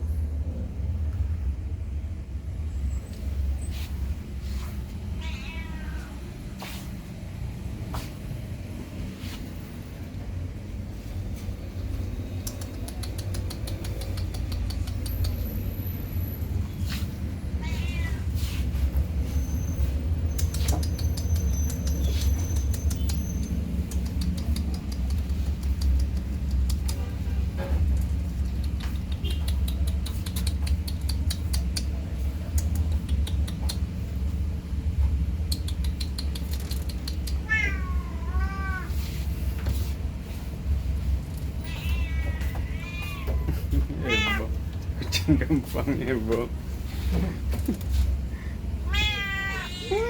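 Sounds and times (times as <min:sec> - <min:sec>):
steady low rumble: 0:00.0 - 0:50.0
cats meowing: 0:05.1 - 0:06.4, 0:17.4 - 0:18.7, 0:37.0 - 0:39.1, 0:41.4 - 0:44.9, 0:48.7 - 0:50.0
scattered clicks: 0:11.9 - 0:15.7, 0:20.3 - 0:27.1, 0:35.4 - 0:37.5.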